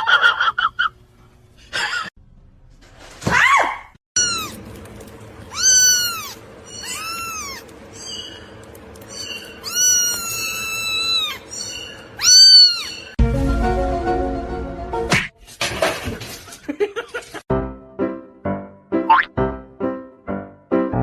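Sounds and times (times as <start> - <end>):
cat meowing: 4.2 - 4.6, 5.5 - 8.3, 9.1 - 13.2.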